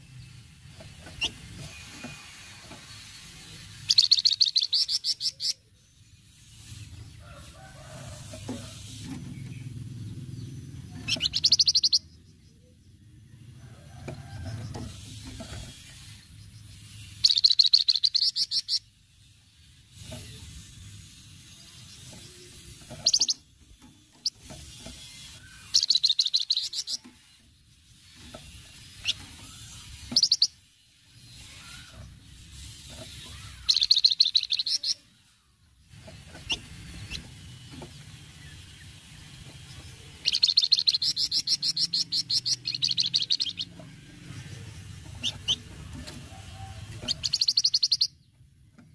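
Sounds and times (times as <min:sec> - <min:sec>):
bird rattling chatter: 0:14.3 - 0:34.9.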